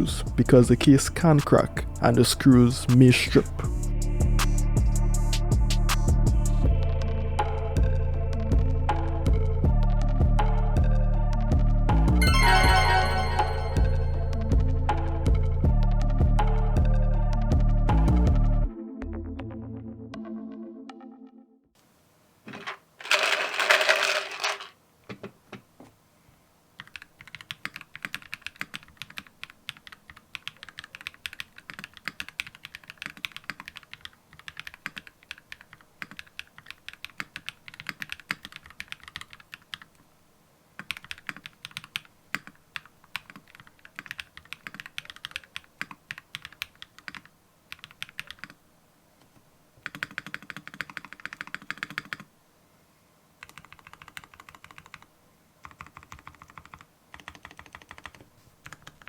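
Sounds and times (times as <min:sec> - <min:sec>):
fast typing on mechanical keyboard: 0:23.0 - 0:24.7, 0:26.8 - 0:40.0, 0:40.8 - 0:48.6, 0:49.8 - 0:52.3, 0:53.4 - 0:59.0.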